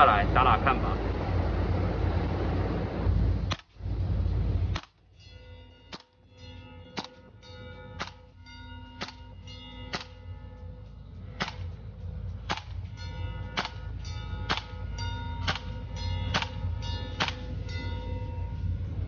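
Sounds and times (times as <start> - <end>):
steady low rumble: 0.0 - 19.0
metallic ringing: 3.8 - 19.0
airsoft rifle shots: 13.6 - 13.8, 14.5 - 14.7, 15.4 - 16.6.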